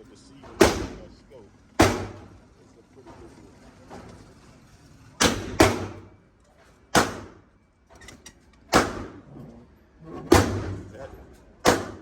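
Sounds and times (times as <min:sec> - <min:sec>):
gunshots with echo: 0:01.8 - 0:02.3.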